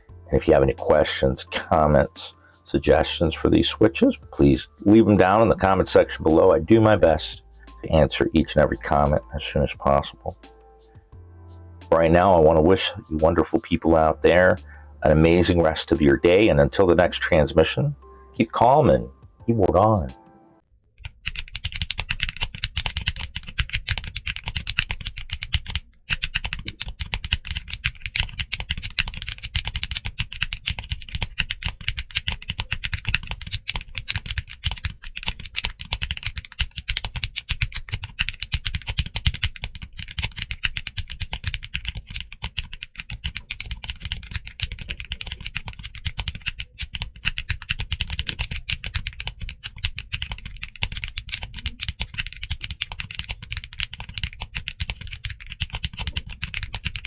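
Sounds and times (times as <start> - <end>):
mechanical keyboard typing: 21.0 - 57.0.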